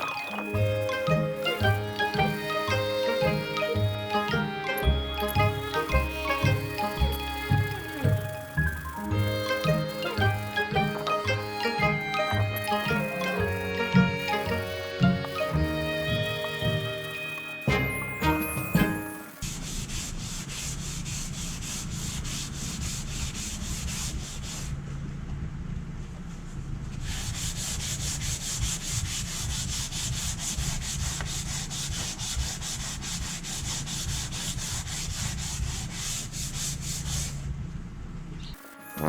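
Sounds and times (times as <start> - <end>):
abrasive rubbing on wooden wall: 0.0 - 17.6.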